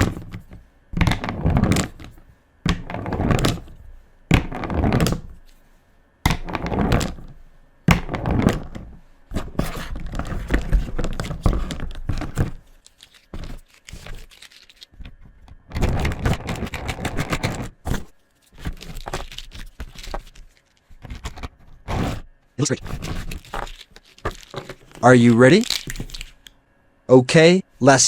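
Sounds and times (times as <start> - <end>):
pens tapping and knocking: 0.0 - 5.3, 6.3 - 7.3, 7.9 - 18.0
markers scratching on paper: 9.3 - 14.9, 21.9 - 25.2.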